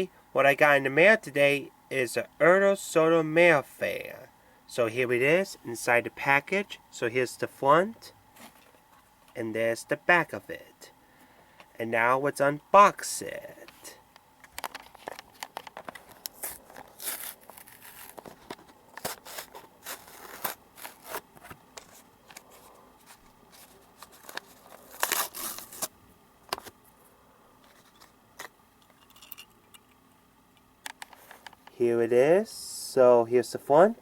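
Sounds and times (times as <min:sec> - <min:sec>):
cardboard and plastic tearing: 0:14.7 - 0:26.7.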